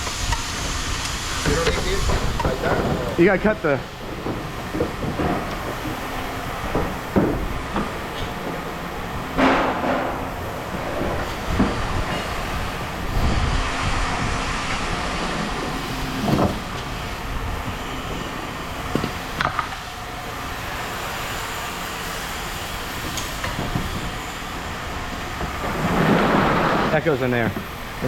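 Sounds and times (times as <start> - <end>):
low mechanical rumble: 0.0 - 28.0
sharp knocks: 9.4 - 10.4.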